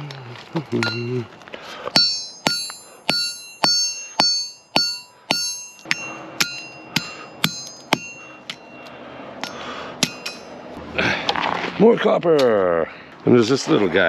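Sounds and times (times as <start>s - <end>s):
hammer striking metal: 0.8s - 1.2s, 1.9s - 10.7s.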